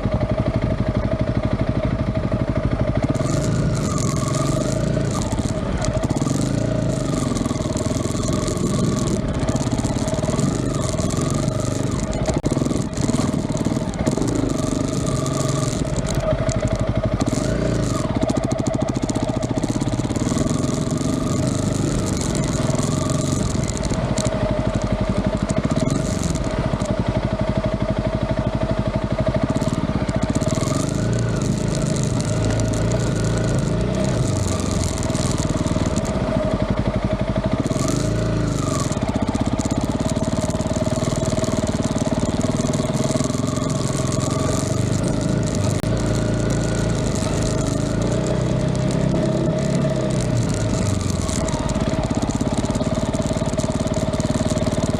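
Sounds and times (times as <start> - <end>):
engine running: 0.0 - 54.9.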